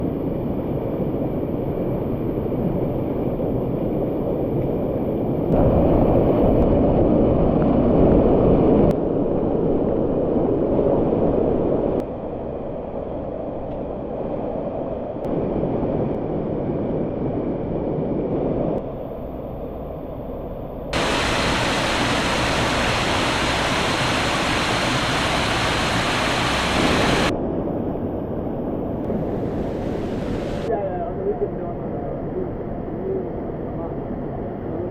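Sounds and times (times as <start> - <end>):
water rushing: 21.0 - 27.3, 29.1 - 30.7.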